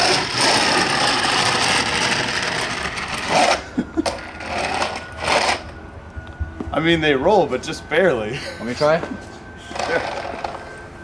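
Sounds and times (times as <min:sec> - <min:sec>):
skateboard wheels rattling: 0:00.0 - 0:05.7.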